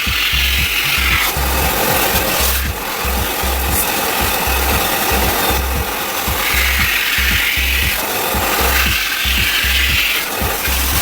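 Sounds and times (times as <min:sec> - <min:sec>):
background music with low beat: 0:00.0 - 0:11.0
vacuum cleaner running: 0:00.0 - 0:11.0.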